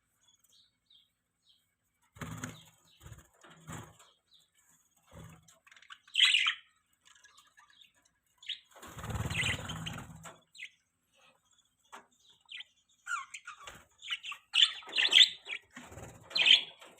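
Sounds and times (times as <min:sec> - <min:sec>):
budgerigars chirping: 0:05.7 - 0:11.4, 0:12.2 - 0:16.9.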